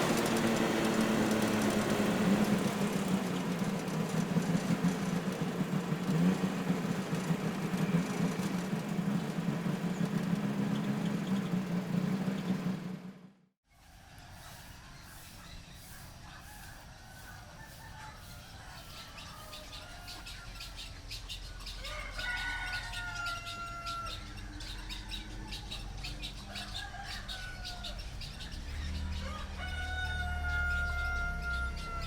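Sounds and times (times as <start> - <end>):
small birds chirping: 0.0 - 13.2, 14.4 - 32.0
rooster crowing: 16.4 - 20.8, 21.7 - 28.2, 29.0 - 32.0.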